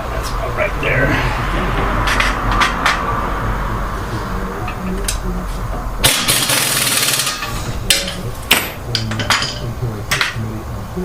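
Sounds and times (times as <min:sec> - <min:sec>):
metallic knocks: 0:01.6 - 0:03.3, 0:04.6 - 0:10.5
rattling burst of rapid impacts: 0:06.0 - 0:08.8.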